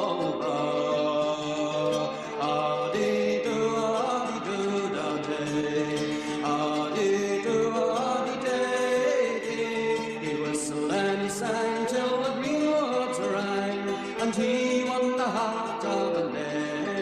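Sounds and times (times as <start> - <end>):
voices singing in harmony: 0.0 - 17.0.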